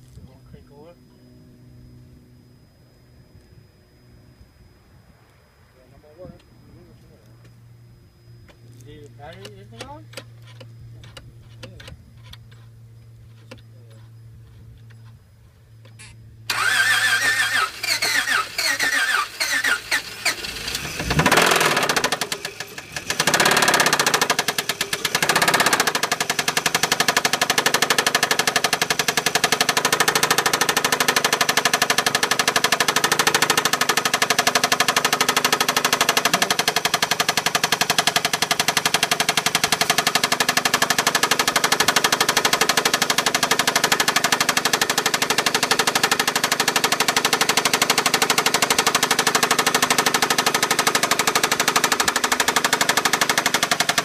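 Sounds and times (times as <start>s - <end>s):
low hum: 0.0s - 18.6s, 19.2s - 26.2s
engine starter cranking: 15.9s - 54.0s
car engine running with knocking: 19.9s - 54.0s.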